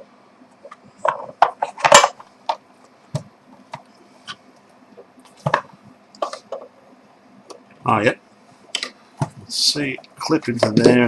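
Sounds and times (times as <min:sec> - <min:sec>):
hard parts clattering and clicking: 0:01.0 - 0:02.2.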